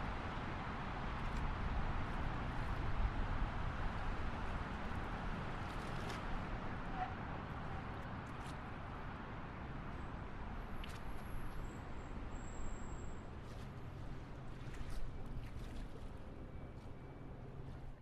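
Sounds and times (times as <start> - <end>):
traffic rumble: 0.0 - 18.0.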